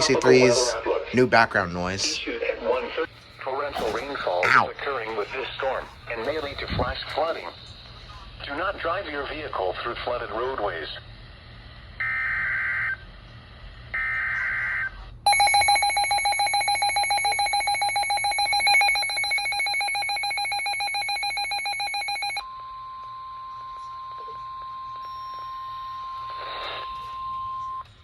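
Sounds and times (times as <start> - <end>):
pulsing alarm tone: 14.0 - 27.9.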